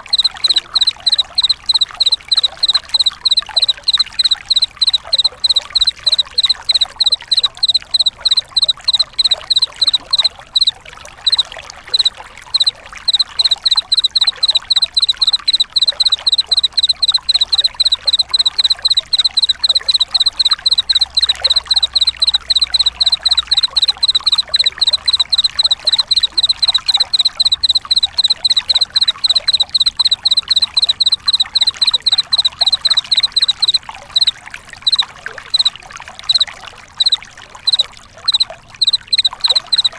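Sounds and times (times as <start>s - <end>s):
insect chirping: 0.0s - 39.9s.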